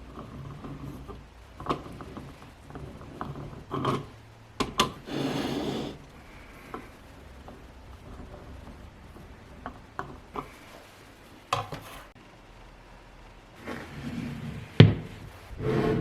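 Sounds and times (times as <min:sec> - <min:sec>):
rubbing: 0:05.0 - 0:06.0.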